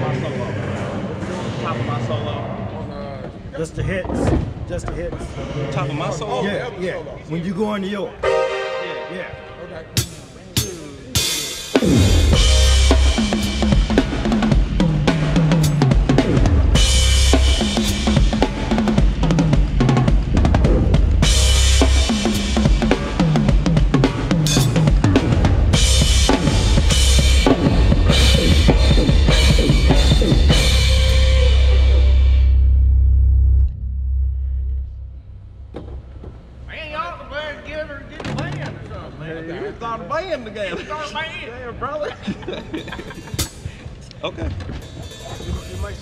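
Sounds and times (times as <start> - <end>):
drum kit with cymbal crashes: 10.0 - 32.6, 44.6 - 46.0
heavy bass line: 11.7 - 36.2.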